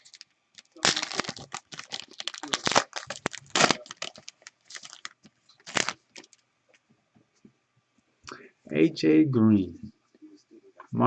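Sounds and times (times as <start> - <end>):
plastic wrapper crinkling: 0.0 - 6.4.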